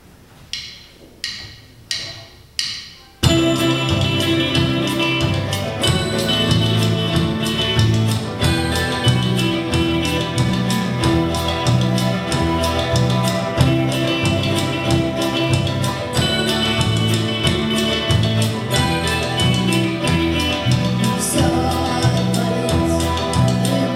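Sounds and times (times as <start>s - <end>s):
struck count-in beats: 0.6s - 23.9s
pop band playing: 3.2s - 23.9s.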